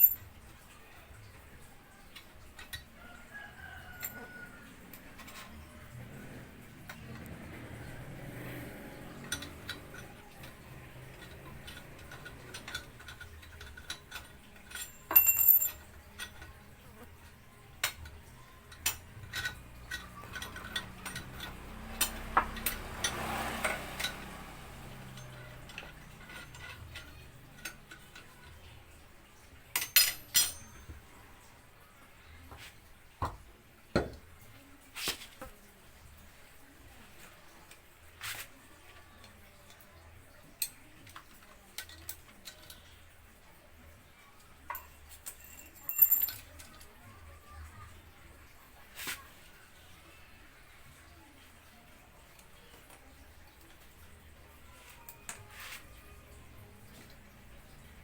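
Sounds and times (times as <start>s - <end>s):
hand tools clinking on metal: 0.0s - 31.2s, 37.1s - 43.5s, 44.6s - 47.8s.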